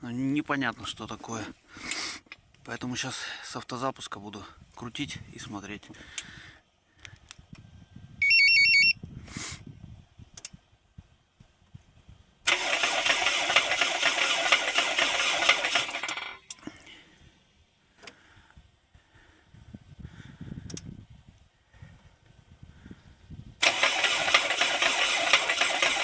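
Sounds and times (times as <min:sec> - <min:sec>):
electronic alarm chirp: 0:08.2 - 0:09.0
car engine cranking on starter: 0:12.5 - 0:16.2, 0:23.6 - 0:26.0.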